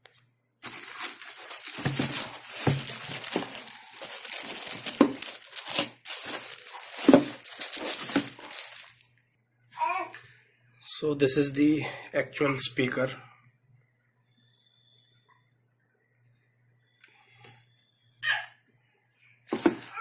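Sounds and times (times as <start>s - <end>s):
packaging crinkling and rustling: 0.0s - 9.1s.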